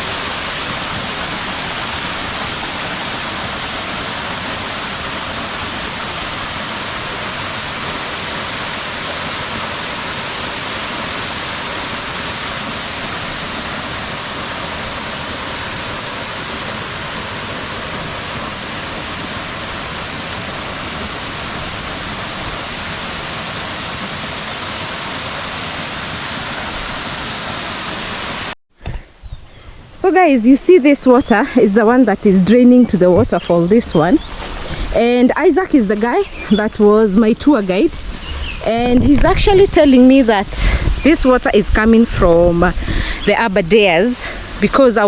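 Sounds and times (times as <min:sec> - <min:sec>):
waterfall rushing: 0:00.0 - 0:28.6, 0:33.0 - 0:44.6.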